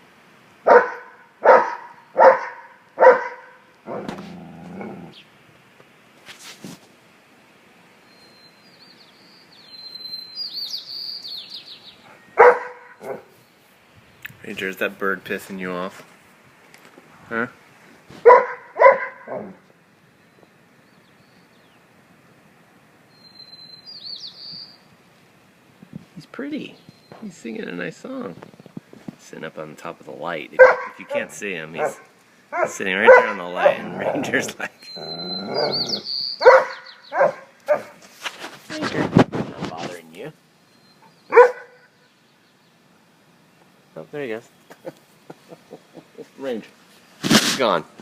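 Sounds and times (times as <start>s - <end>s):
dog barking: 0.7s - 4.1s, 12.4s - 13.3s, 18.2s - 19.6s, 30.6s - 34.3s, 36.4s - 38.0s, 41.3s - 41.9s
songbird whistling: 8.0s - 12.4s, 23.1s - 24.8s, 34.8s - 37.4s.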